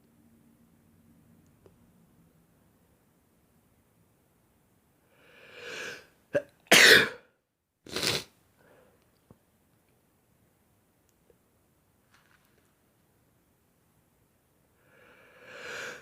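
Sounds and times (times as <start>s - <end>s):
man sneezing: 6.7s - 7.2s.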